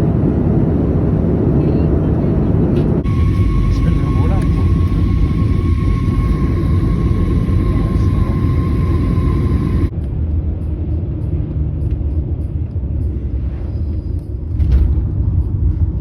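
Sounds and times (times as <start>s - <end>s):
low vehicle rumble: 0.0s - 10.7s
thin high tone: 3.0s - 9.9s.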